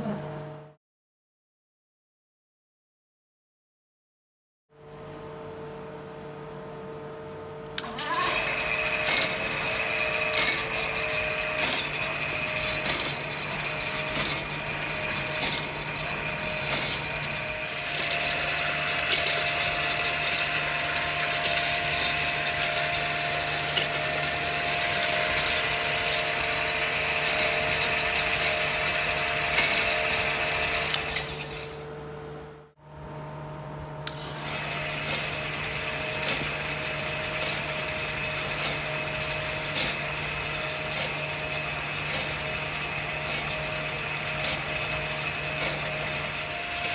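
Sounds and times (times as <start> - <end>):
machine motor whine: 7.7 - 46.9
sharp machine clicks: 7.8 - 31.8, 34.1 - 46.9.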